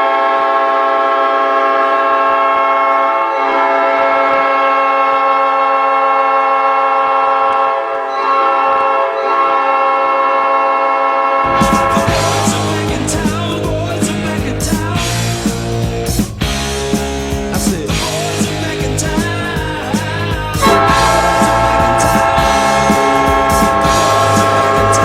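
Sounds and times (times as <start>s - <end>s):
arena goal horn blast: 0.0s - 14.3s, 20.6s - 25.0s.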